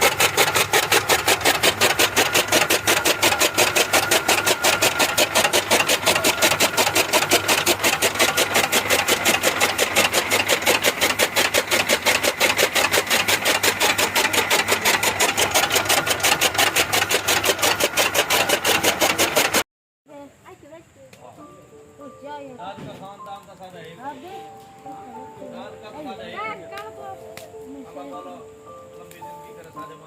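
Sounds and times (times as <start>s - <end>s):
chaff cutter rhythmic clatter: 0.0s - 19.6s.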